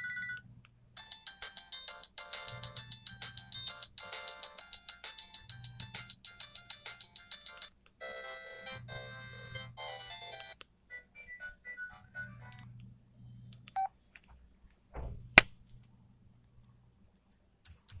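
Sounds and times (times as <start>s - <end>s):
phone ringtone melody: 1.0s - 12.5s.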